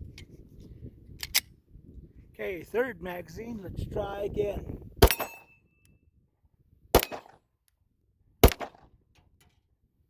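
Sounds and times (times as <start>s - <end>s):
pistol shots echoing: 5.0s - 5.5s, 7.0s - 7.4s, 8.4s - 8.8s.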